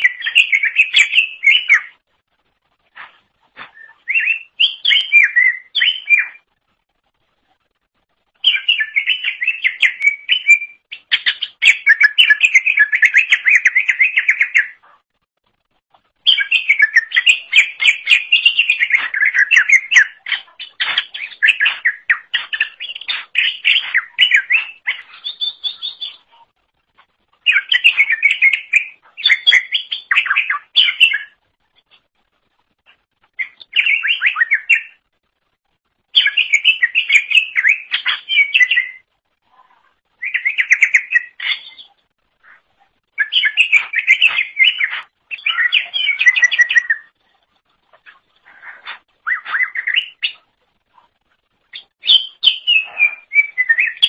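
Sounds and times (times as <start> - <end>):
songbird rapid chirping song: 0.0 - 54.0.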